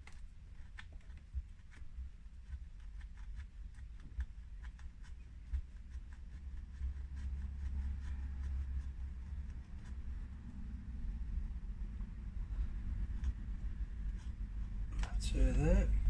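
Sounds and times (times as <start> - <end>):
low rumble: 14.5 - 16.0.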